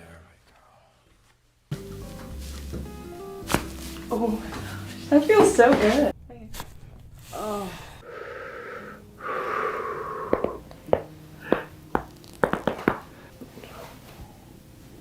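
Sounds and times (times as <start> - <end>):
heavy breathing: 4.4 - 5.0, 7.2 - 11.8
person moaning: 7.3 - 10.6
spinal joints cracking: 10.3 - 13.1.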